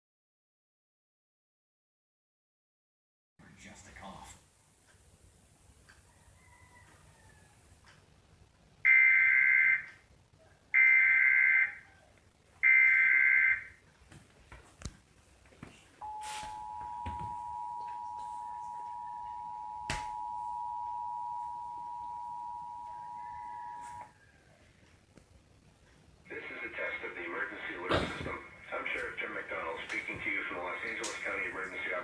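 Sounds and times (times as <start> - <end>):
two-tone attention signal: 16.0 - 24.1.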